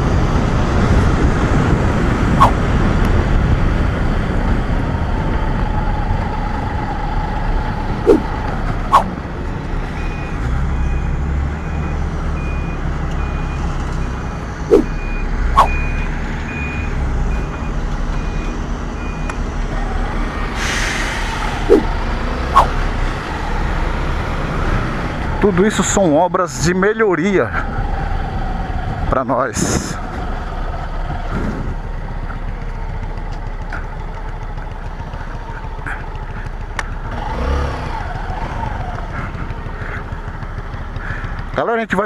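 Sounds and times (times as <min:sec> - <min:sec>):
motorcycle ride noise: 0:00.0 - 0:25.7, 0:29.7 - 0:42.0
short sharp chirps: 0:08.9 - 0:09.1, 0:14.7 - 0:14.9, 0:15.6 - 0:15.8.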